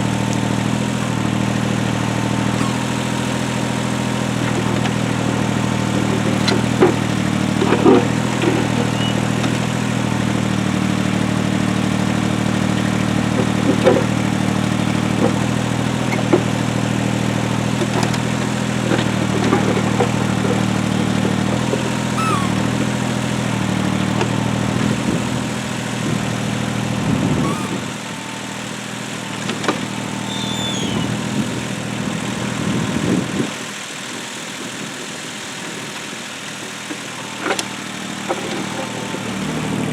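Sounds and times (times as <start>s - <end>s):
tractor engine running: 0.0s - 39.9s
knocks and clanks: 5.8s - 9.7s.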